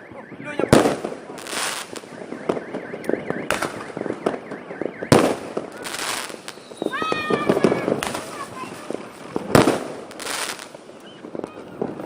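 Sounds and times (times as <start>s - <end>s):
car alarm warbling: 0.0s - 8.0s
fireworks bangs: 0.3s - 12.0s
fireworks crackling: 0.4s - 12.0s.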